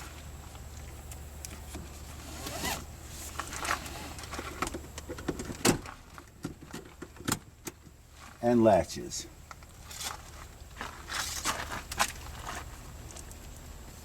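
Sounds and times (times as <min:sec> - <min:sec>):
seatbelt webbing sliding out: 0:02.0 - 0:04.3.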